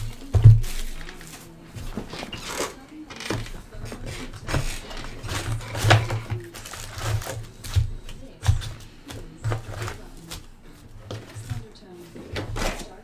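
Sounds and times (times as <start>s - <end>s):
wrappers crinkling and tearing: 0.0s - 13.0s.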